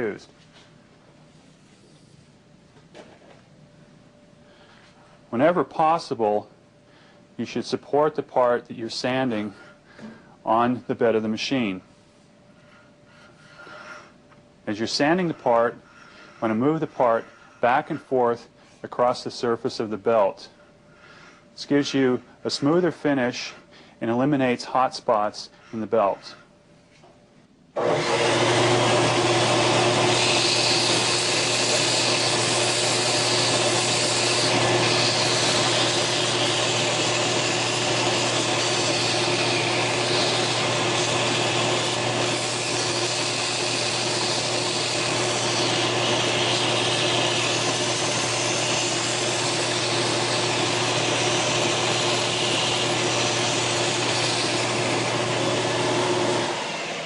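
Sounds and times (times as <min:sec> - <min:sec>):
belt sander motor hum: 0:27.8 - 0:57.0
grinding hiss of sanding: 0:28.9 - 0:55.8.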